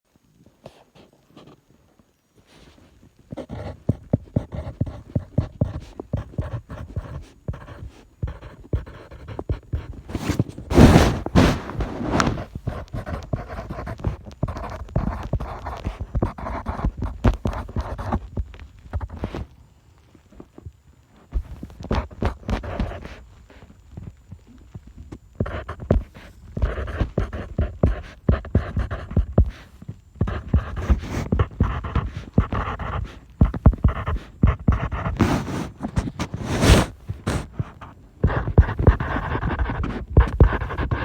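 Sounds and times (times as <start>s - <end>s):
pencil scratching on paper: 3.3s - 18.2s, 25.4s - 41.0s.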